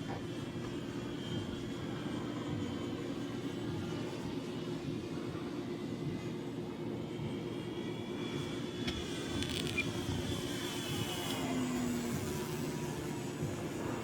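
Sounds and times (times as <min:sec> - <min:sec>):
model airplane motor whining: 0:07.3 - 0:14.0.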